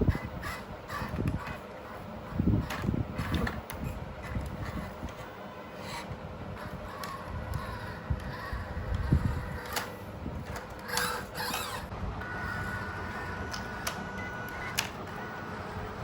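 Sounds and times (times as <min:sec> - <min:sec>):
toy truck electric motor whining: 0:00.0 - 0:16.0.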